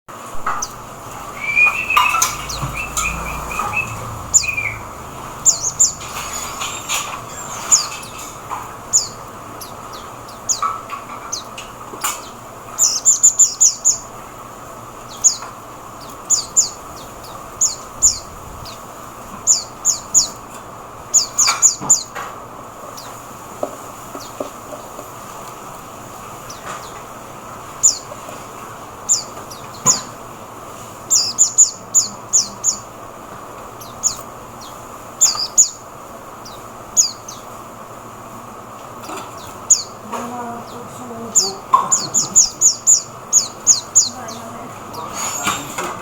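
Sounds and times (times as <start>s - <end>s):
high downward bird chirps: 0.4s - 11.5s, 33.9s - 37.5s
lower trilling bird call: 0.5s - 10.7s.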